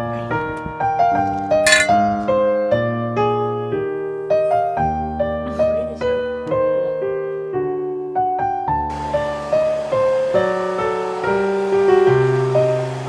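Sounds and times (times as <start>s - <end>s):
piano music: 1.7s - 5.1s.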